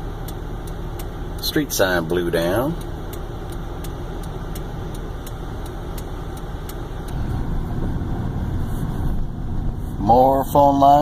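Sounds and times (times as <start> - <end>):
light regular ticking: 0.0 - 7.3
car engine and road rumble: 0.0 - 11.0.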